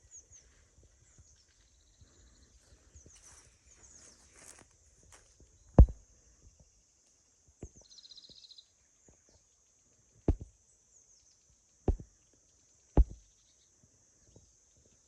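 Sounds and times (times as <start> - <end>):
sharp thumps: 5.8 - 6.0, 10.3 - 10.5, 11.9 - 12.1, 13.0 - 13.2.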